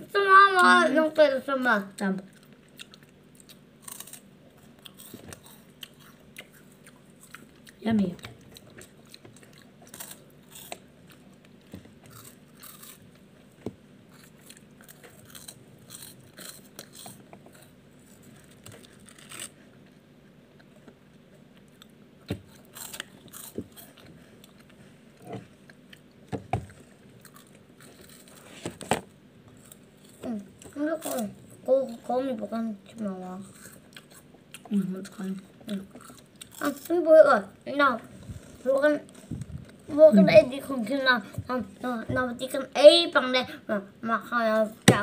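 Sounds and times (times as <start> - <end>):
wafers being bitten and chewed: 2.0 - 20.0, 20.6 - 28.8, 29.5 - 32.1, 32.9 - 37.0.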